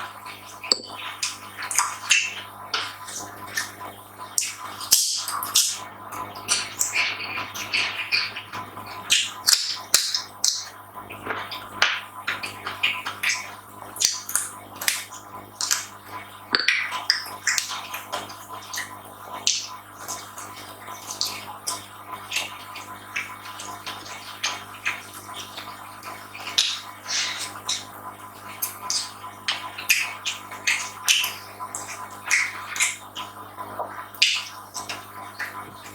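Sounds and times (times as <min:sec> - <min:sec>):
faint steady hum: 0:00.0 - 0:35.9
wet chewing and lip smacking: 0:12.4 - 0:15.9.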